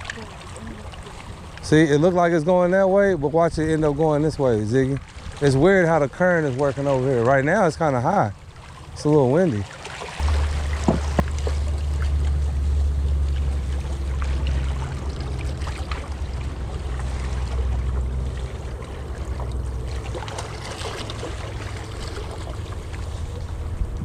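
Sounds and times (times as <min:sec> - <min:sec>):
creek water flowing: 0:00.0 - 0:24.0
wind buffeting microphone: 0:20.5 - 0:24.0.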